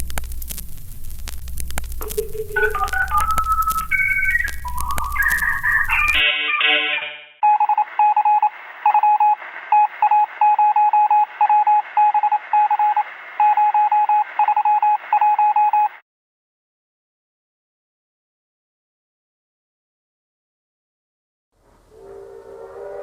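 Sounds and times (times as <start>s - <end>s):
electronic music: 2.0s - 6.6s.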